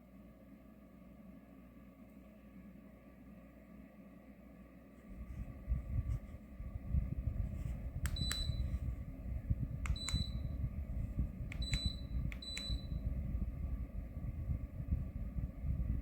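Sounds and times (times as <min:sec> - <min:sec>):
steady low rumble: 0:05.1 - 0:16.0
short high-pitched beeps: 0:11.6 - 0:13.0.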